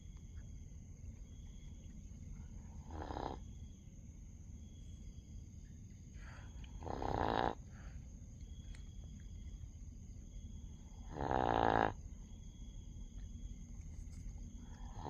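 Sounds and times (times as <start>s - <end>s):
dog snoring: 2.8s - 3.4s, 6.8s - 7.6s, 11.0s - 12.0s.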